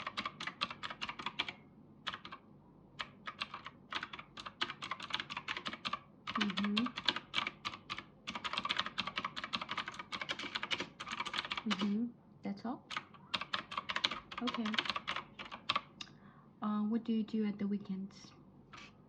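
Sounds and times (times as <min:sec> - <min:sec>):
typing on a keyboard: 0:00.0 - 0:02.4, 0:03.0 - 0:12.0, 0:12.9 - 0:15.9.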